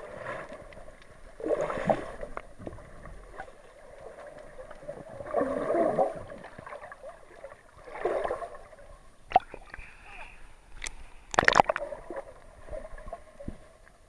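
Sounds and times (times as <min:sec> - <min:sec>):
muffled water sloshing and gurgling: 0:00.0 - 0:14.0.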